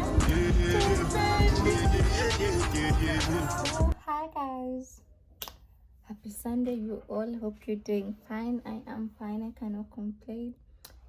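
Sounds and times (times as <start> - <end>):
music with a steady beat: 0.0 - 4.0
person singing: 0.0 - 4.0.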